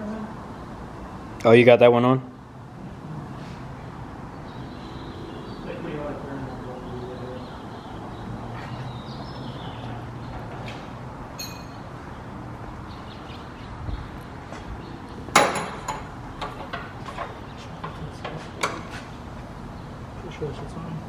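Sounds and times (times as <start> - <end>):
metal clinks and knocks: 11.3 - 11.9, 15.3 - 17.4
metal clank: 11.4 - 11.8, 15.3 - 17.4
metallic ring: 11.4 - 11.9.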